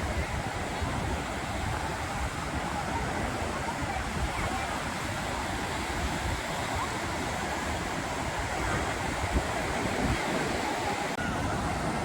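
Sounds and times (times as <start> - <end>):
ocean surf washing onto beach: 0.0 - 12.0.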